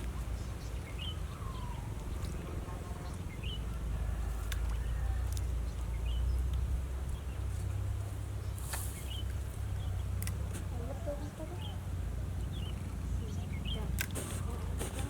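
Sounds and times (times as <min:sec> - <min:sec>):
bird chirping: 0:00.0 - 0:04.2, 0:08.4 - 0:15.0.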